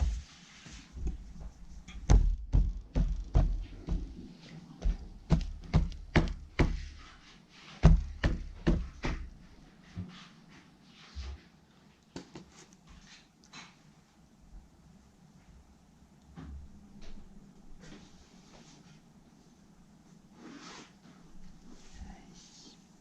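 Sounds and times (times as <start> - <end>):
heavy thuds: 1.0 - 7.2, 7.8 - 9.4
knocks and taps of hard objects: 4.8 - 6.9, 7.8 - 9.3.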